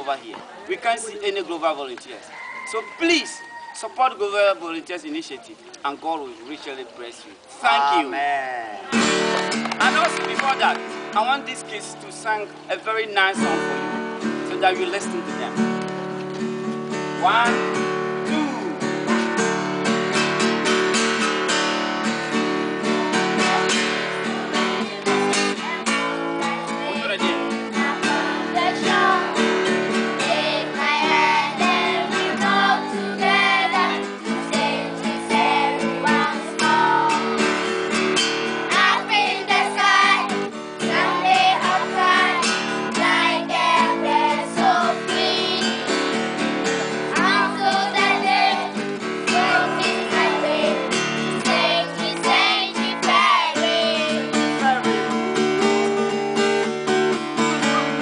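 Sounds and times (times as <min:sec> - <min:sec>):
strummed acoustic guitar: 0:08.7 - 0:58.0
children singing: 0:22.8 - 0:37.7, 0:38.5 - 0:46.2, 0:46.8 - 0:54.9.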